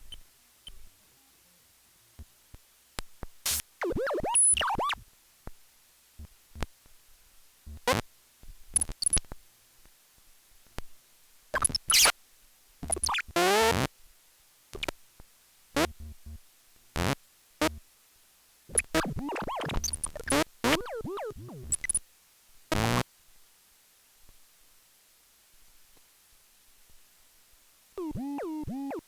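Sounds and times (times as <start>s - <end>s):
synthesizer bursts: 20.7s - 21.8s, 28.0s - 29.0s.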